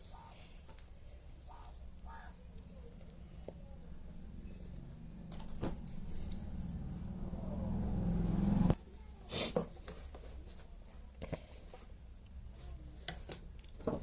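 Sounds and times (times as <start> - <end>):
low mains hum: 0.0 - 9.2.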